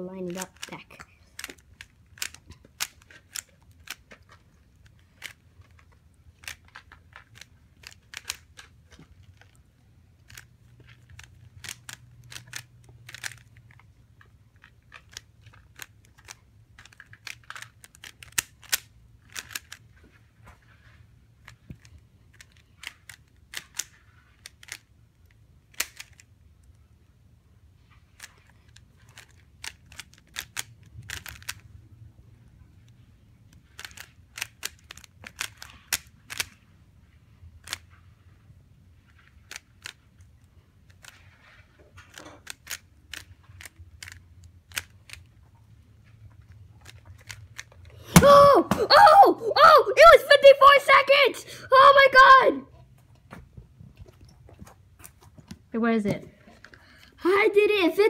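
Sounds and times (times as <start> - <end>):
puzzle cube plastic clicks: 0.2 - 26.8, 27.8 - 36.7, 37.5 - 38.0, 38.9 - 49.2.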